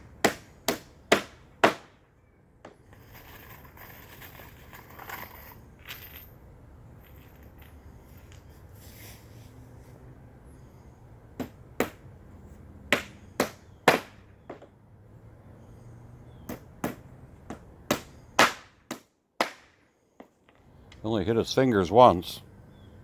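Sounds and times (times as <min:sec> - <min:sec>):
hammer striking nails: 0:00.2 - 0:02.0, 0:11.4 - 0:12.0, 0:12.9 - 0:14.7, 0:16.5 - 0:20.3.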